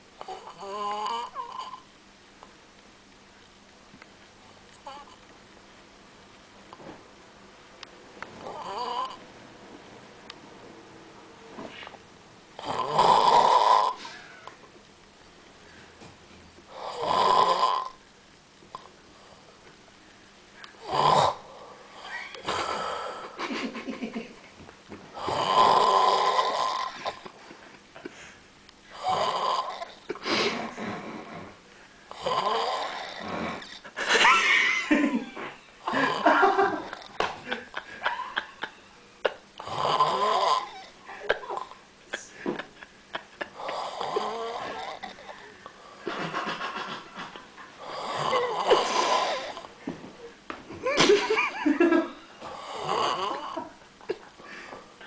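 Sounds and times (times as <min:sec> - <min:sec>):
person snoring loudly: 0:00.2 - 0:01.9, 0:08.4 - 0:09.2, 0:12.6 - 0:14.2, 0:16.7 - 0:18.0, 0:20.8 - 0:23.4, 0:25.1 - 0:27.3, 0:28.9 - 0:33.9, 0:35.8 - 0:37.6, 0:39.6 - 0:41.8, 0:43.5 - 0:46.0, 0:47.8 - 0:49.8, 0:52.4 - 0:53.8.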